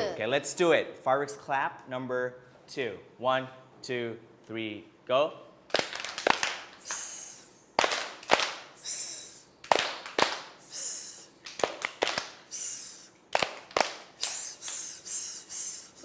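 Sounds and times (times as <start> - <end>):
hand claps: 5.7 - 7.1, 7.8 - 8.7, 9.6 - 10.6, 11.4 - 12.5, 13.3 - 14.9.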